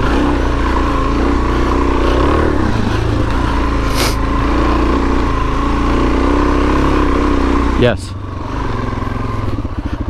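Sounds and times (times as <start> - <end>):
motorcycle engine running: 0.0 - 10.0
brief hiss: 3.9 - 4.2.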